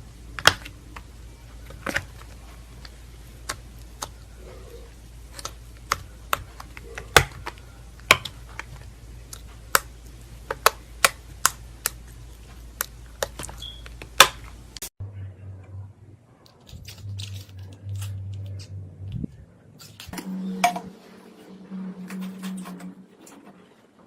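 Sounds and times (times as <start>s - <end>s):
slime clicking and popping: 5.3s - 12.0s
low hum: 14.5s - 24.0s.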